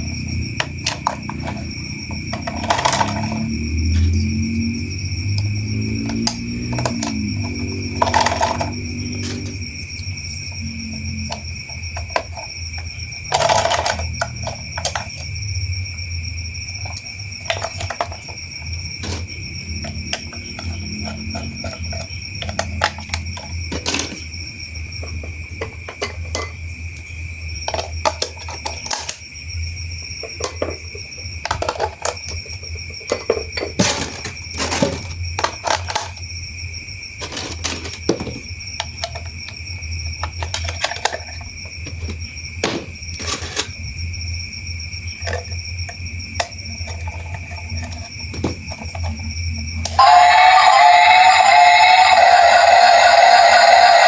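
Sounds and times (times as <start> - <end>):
plastic toy parts clicking: 13.3 - 15.0
steady high-pitched whine: 49.8 - 54.0.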